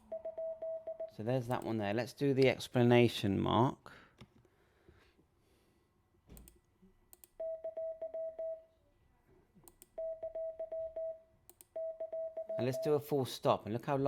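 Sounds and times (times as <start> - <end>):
morse code beeps: 0.0 - 1.1, 7.4 - 8.6, 10.0 - 11.2, 11.8 - 13.0.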